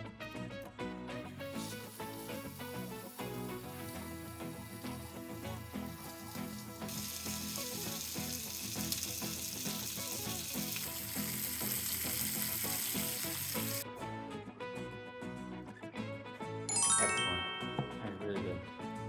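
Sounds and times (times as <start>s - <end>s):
fish frying sizzle: 1.4s - 13.8s
background music with a beat: 16.4s - 19.0s.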